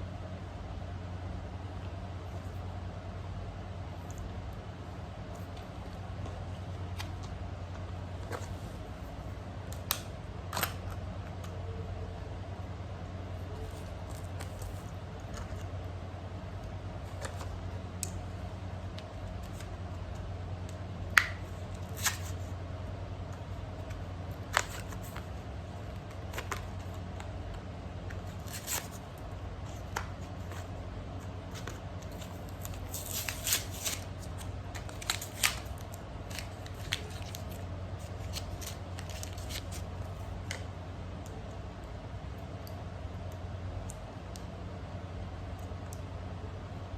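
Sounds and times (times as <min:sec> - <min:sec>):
steady low hum: 0:00.0 - 0:46.9
packaging clicks and scrapes: 0:28.2 - 0:29.0, 0:31.5 - 0:39.9.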